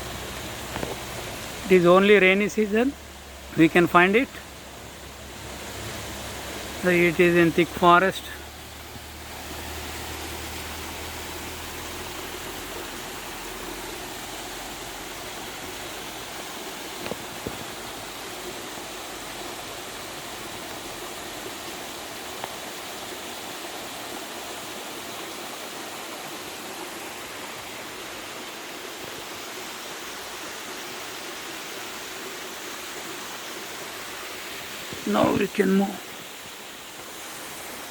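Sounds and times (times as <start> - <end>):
waterfall and stream rushing: 0.0 - 37.9.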